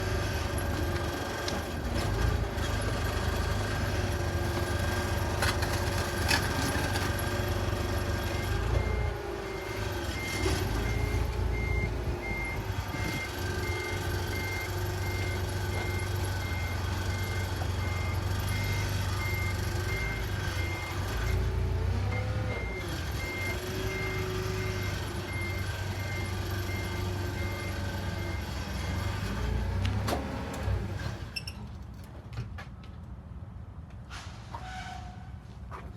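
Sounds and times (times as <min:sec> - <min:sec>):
reversing alarm beeping: 0:08.2 - 0:29.0.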